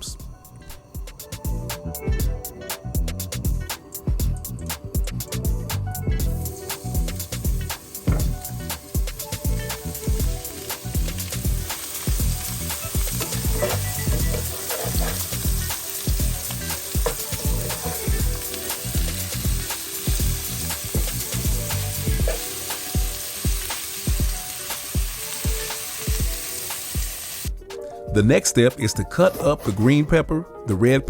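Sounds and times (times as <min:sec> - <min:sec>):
mushrooms sizzling in oil: 0:06.2 - 0:27.6.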